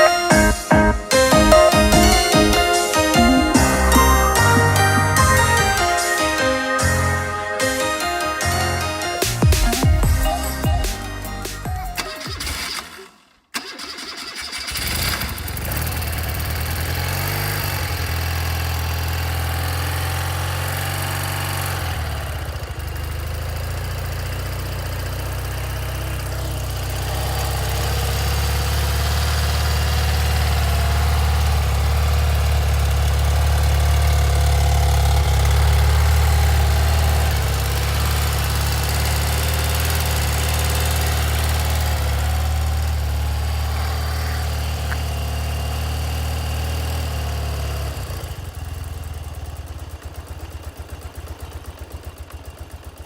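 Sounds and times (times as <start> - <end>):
motorcycle engine idling: 14.4 - 53.0.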